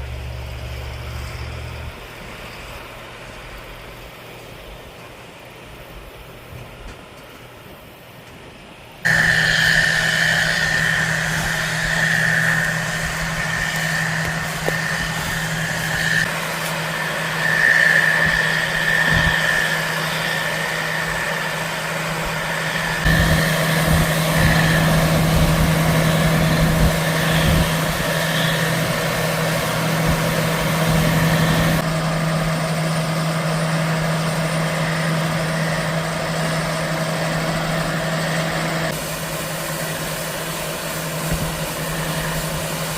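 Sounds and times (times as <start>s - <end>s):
heavy machine engine running: 0.0s - 3.6s, 9.0s - 42.9s
high whine: 9.0s - 42.9s.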